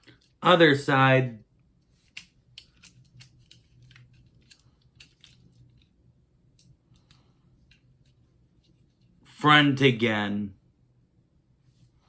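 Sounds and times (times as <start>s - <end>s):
fingers handling plastic figure: 1.8s - 9.1s.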